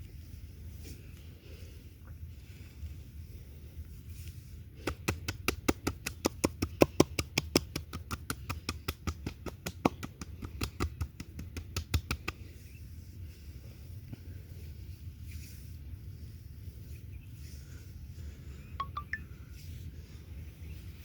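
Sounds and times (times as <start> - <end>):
hand slaps on oiled skin: 4.8 - 12.4.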